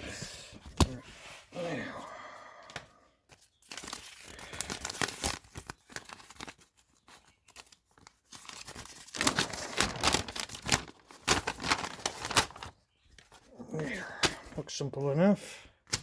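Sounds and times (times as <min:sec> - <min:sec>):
paper and plastic packaging crinkling: 0:03.3 - 0:15.1.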